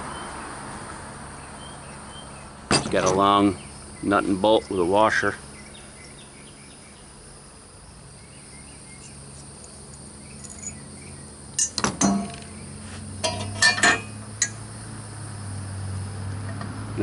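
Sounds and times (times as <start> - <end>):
steel parts clinking: 2.7 - 3.3, 9.0 - 10.9, 11.6 - 12.5, 13.2 - 14.6.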